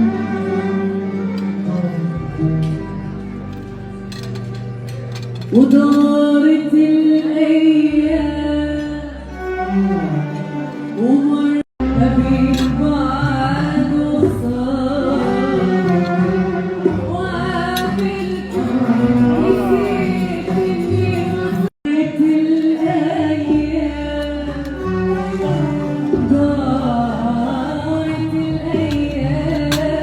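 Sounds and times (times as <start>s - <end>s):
instrumental accompaniment: 0.0s - 30.0s
singing voice with vibrato: 11.0s - 30.0s.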